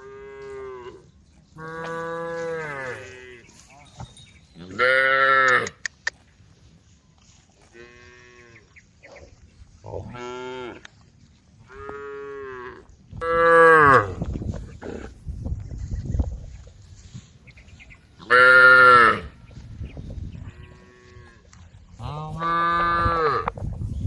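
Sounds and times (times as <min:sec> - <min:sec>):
cattle mooing: 0:01.6 - 0:03.6, 0:22.0 - 0:23.5.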